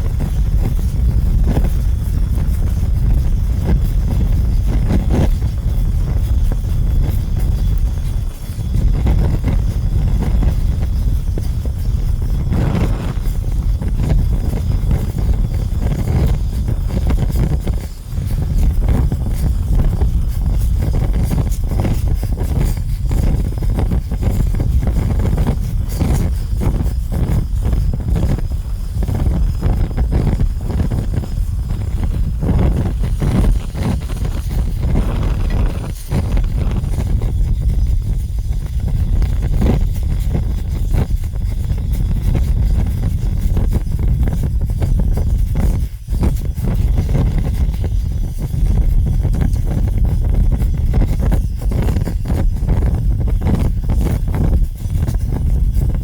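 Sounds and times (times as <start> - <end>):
fire crackling and popping: 0.0 - 43.7
fire rumbling: 0.0 - 45.2.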